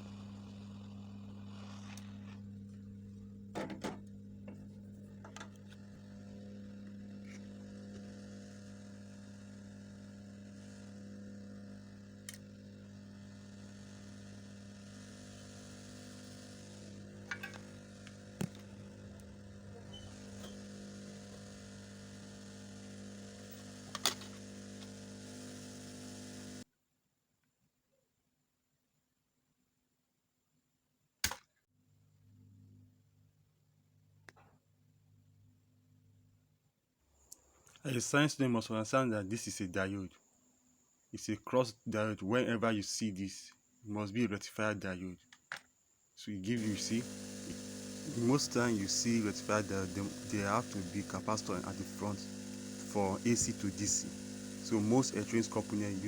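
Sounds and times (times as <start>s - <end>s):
electrical hum: 0.0s - 26.6s, 46.3s - 56.0s
blower hiss: 12.2s - 26.6s, 46.5s - 56.0s.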